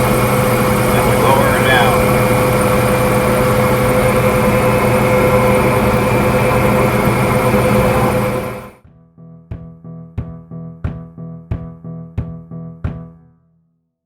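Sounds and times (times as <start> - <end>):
combine harvester droning: 0.0 - 8.8
high machine whine: 0.0 - 8.8.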